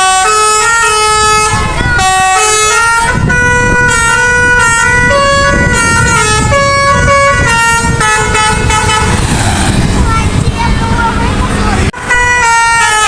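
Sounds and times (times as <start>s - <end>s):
musical air horn playing tune: 0.0s - 9.8s, 12.0s - 13.0s
low rumble: 5.1s - 12.0s.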